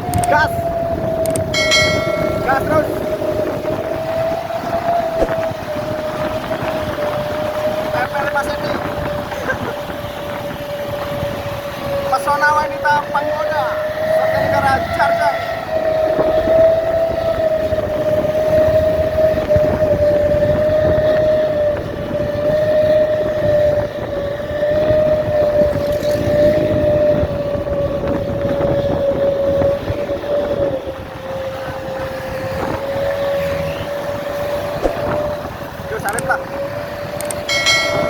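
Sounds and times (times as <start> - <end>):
road and engine noise: 0.0 - 38.0.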